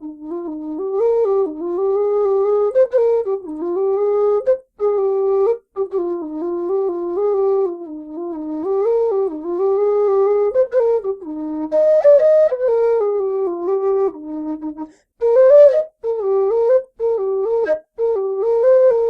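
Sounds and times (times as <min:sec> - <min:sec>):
low whistle slow melody: 0:00.0 - 0:19.0.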